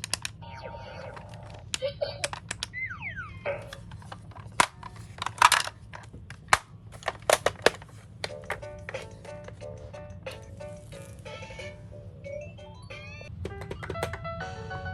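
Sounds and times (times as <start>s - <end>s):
toy cars clattering: 0.0s - 0.4s, 1.1s - 2.8s, 3.6s - 11.8s
toy pulsing electronic sound: 0.4s - 3.9s, 9.2s - 13.3s
falling electronic tone: 2.8s - 3.5s.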